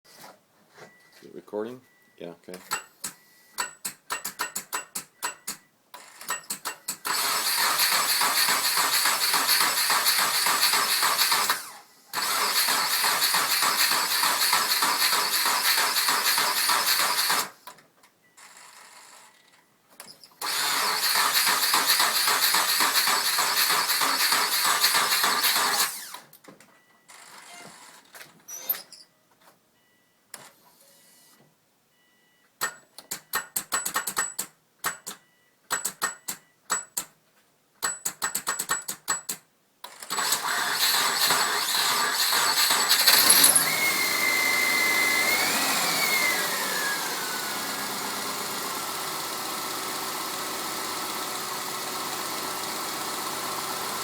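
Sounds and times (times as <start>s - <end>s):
car engine cranking on starter: 6.6s - 17.7s, 20.4s - 26.3s, 40.0s - 54.0s
quick clicks: 37.8s - 39.4s.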